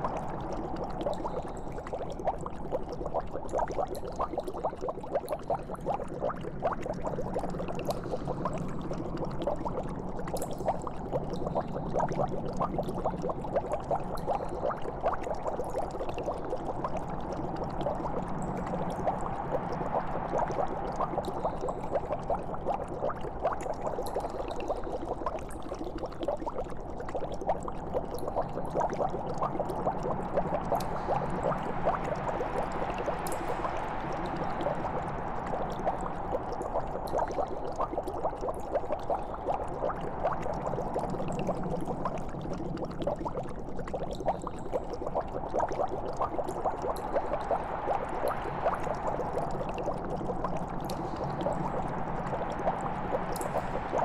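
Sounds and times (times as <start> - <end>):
liquid bubbling and gurgling: 0.0 - 54.0.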